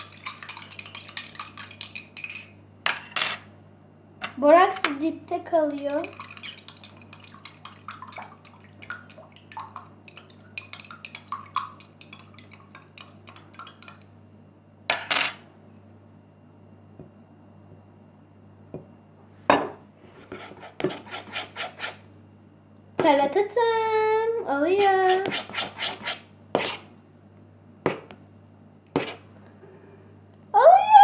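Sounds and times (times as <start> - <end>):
utensil stirring slime in a bowl: 0.0 - 2.6, 5.5 - 14.1, 20.2 - 22.0, 24.8 - 26.8, 29.0 - 29.2.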